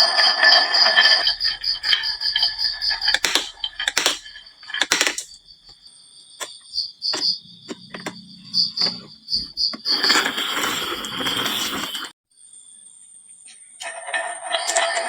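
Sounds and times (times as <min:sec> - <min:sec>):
pulsing high-pitched tone: 0:00.8 - 0:05.4
marbles clattering on wood: 0:01.1 - 0:05.4.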